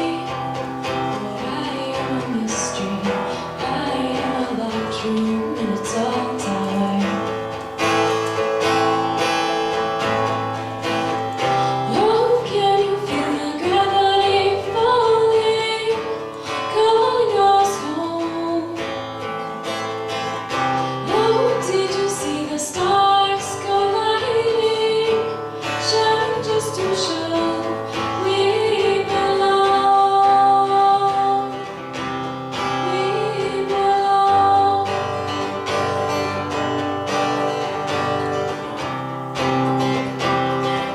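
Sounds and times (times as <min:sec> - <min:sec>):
woman singing: 0:00.0 - 0:07.6, 0:11.1 - 0:36.6
strummed acoustic guitar: 0:00.0 - 0:40.9.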